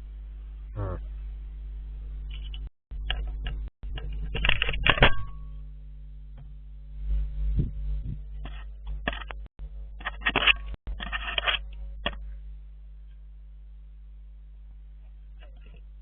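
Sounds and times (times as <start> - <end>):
scratching and scraping near microphone: 2.3 - 5.4, 6.9 - 12.2, 15.0 - 15.9.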